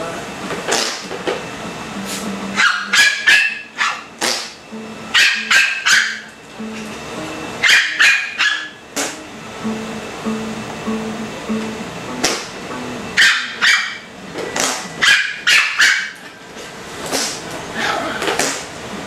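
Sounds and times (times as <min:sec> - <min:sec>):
dog barking high-pitched: 0:02.6 - 0:04.1, 0:05.1 - 0:06.3, 0:07.6 - 0:08.8, 0:13.2 - 0:14.1, 0:15.0 - 0:16.2.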